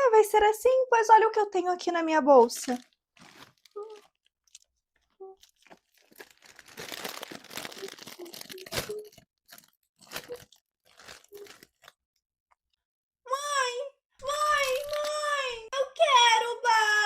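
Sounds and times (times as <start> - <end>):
plastic wrappers crinkling: 2.4 - 12.0, 14.4 - 15.4.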